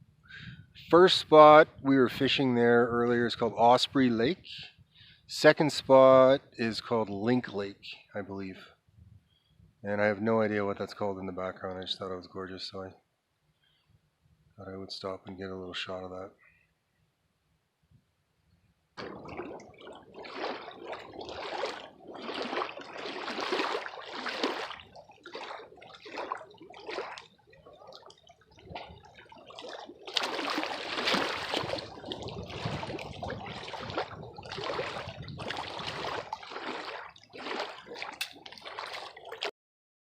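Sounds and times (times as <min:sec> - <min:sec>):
water splashing and gurgling: 0:19.0 - 0:39.5.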